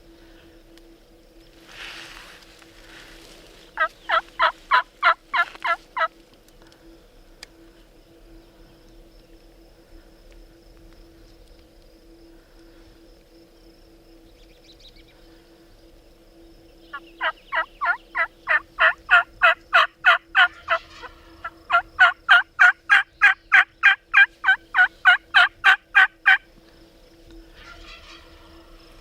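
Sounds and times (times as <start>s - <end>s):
wild turkey yelping: 3.8s - 6.1s, 17.2s - 26.4s.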